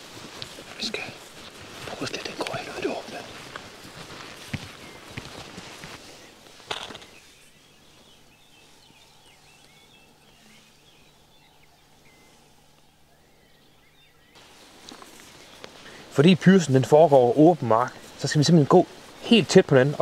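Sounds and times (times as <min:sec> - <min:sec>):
rustling scuffing footsteps: 0:00.0 - 0:12.9, 0:13.6 - 0:20.0
high bird chirps: 0:06.1 - 0:12.4.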